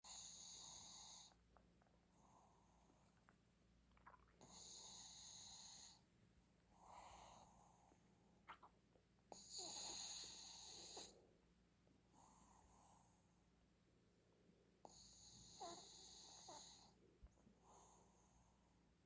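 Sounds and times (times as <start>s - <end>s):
dog snoring softly: 0.0s - 1.5s, 4.0s - 6.1s, 6.7s - 8.6s, 9.3s - 11.2s, 14.8s - 18.8s.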